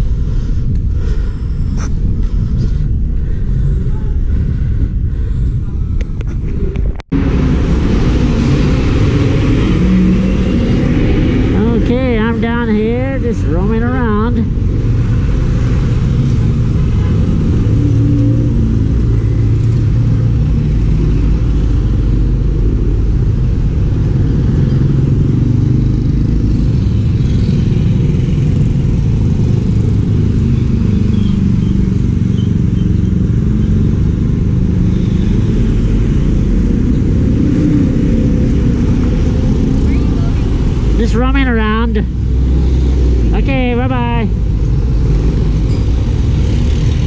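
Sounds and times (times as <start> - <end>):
vehicle engine and road noise: 0.0 - 47.0.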